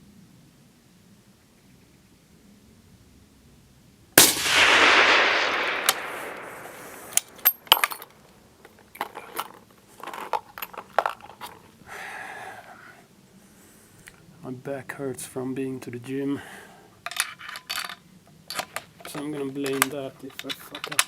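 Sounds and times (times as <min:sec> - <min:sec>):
suppressed rifle shot: 0:04.2 - 0:07.9
rifle handling clicks and knocks: 0:05.4 - 0:11.7, 0:17.0 - 0:21.0.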